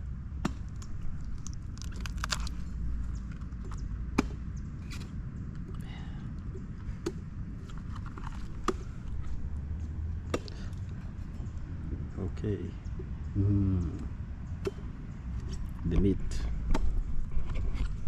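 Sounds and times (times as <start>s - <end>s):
steady low rumble: 0.0s - 18.0s
knocks on coconut: 4.2s - 4.4s.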